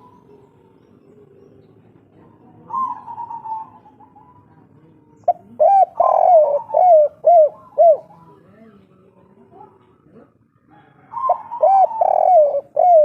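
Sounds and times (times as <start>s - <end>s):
dove cooing: 0.0s - 8.6s, 10.7s - 13.0s.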